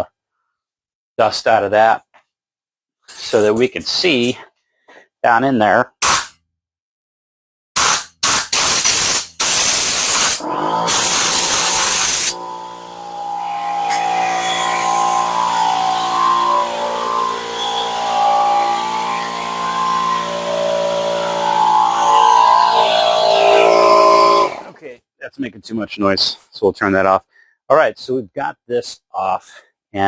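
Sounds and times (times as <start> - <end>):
compressed air blasts: 7.8 - 12.3
air compressor running: 8.5 - 24.8.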